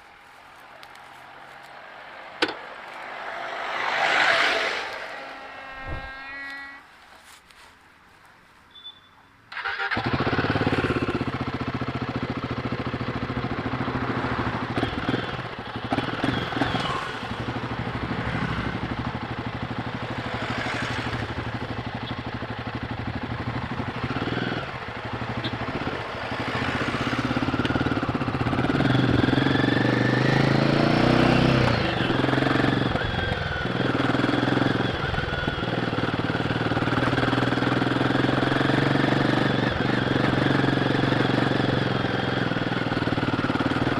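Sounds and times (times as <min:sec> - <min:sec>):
motorcycle engine starting and idling: 0:09.5 - 0:43.9.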